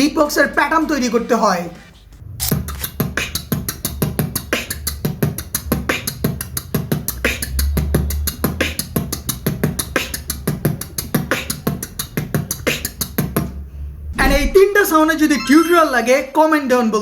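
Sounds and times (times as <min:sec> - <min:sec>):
beatboxing: 0:02.6 - 0:13.3.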